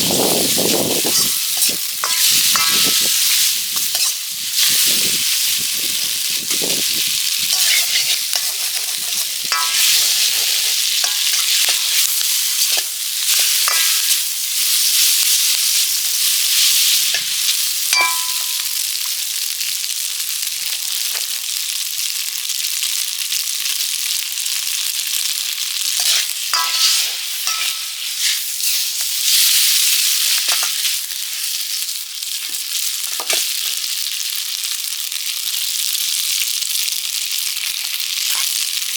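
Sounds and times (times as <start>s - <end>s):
food sizzling in a wok: 0.0s - 38.9s
ringing clinks: 18.0s - 18.7s.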